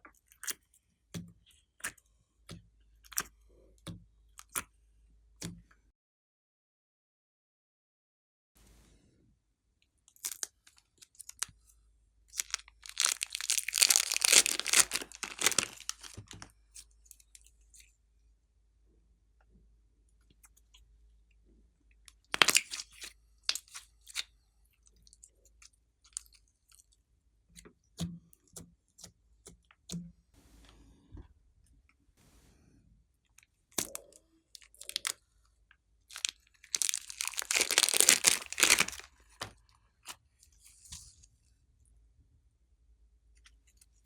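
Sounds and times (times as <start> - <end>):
slime squishing with crackling pops: 12.3 - 17.2, 22.1 - 26.5, 33.7 - 35.2, 36.1 - 40.2.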